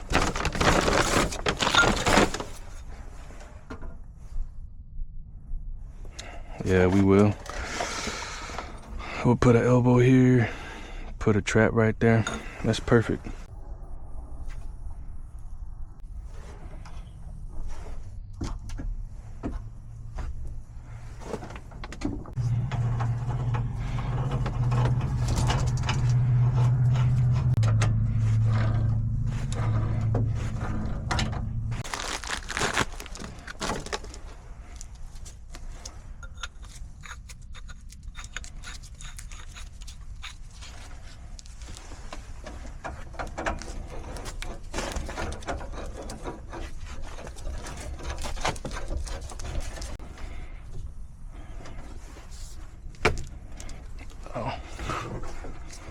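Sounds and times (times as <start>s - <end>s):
low motor hum: 13.3s - 35.0s
metal fittings and tools clinking: 35.8s - 40.9s.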